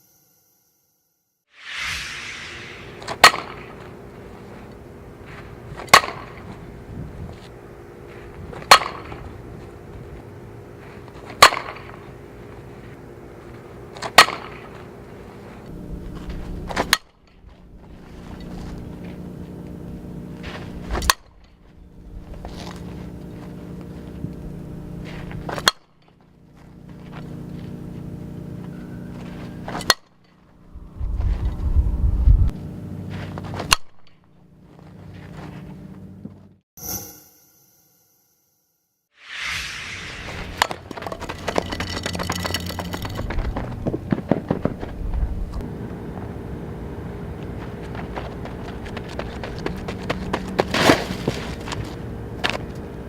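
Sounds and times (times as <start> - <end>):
low rumble: 1.6 - 3.5, 30.5 - 32.6, 39.4 - 41.6
steady low hum: 1.7 - 36.6, 39.5 - 53.0.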